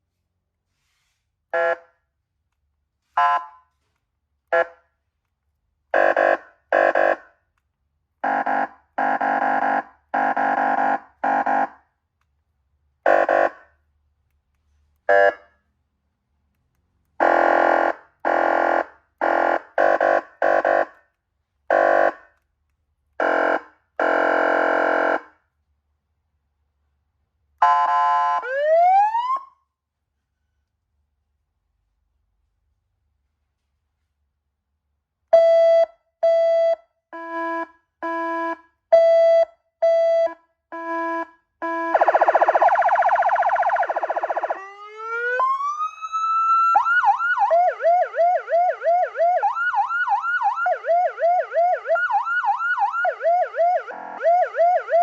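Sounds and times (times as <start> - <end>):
police siren horn blasts: 1.5 - 1.9, 3.2 - 3.7, 5.9 - 7.3, 8.2 - 11.8, 13.0 - 13.7, 15.1 - 15.5, 17.2 - 21.0, 21.7 - 22.3, 23.2 - 25.4, 27.6 - 29.3
siren rising wail: 28.4 - 29.5, 41.7 - 55.0.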